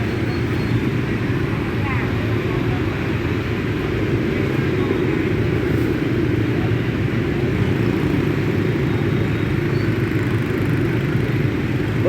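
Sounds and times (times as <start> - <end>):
city street traffic rumble: 0.0 - 12.0.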